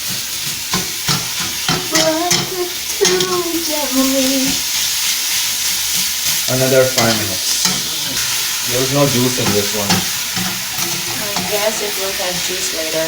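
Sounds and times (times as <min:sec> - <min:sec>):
meat sizzling in a frying pan: 0:00.0 - 0:13.0
spatula scraping pan: 0:00.0 - 0:13.0
utensil knocking on pan: 0:00.7 - 0:03.4, 0:06.0 - 0:07.9, 0:09.2 - 0:11.7.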